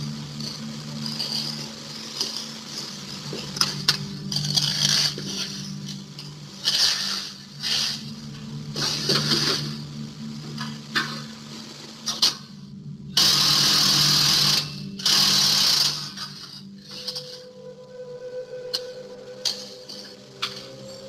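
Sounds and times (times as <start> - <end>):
steady low hum: 0.0 - 21.0
metal tools clinking and scraping: 16.5 - 17.5.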